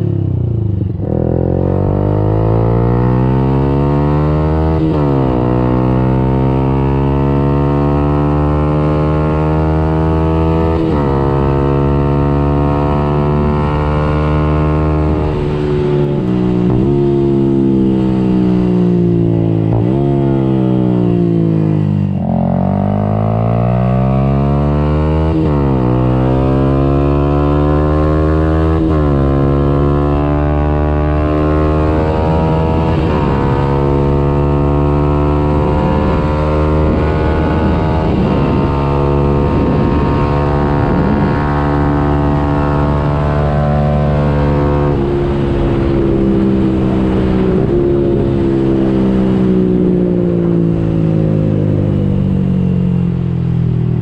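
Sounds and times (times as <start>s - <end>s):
motorcycle engine revving through gears: 0.0s - 54.0s.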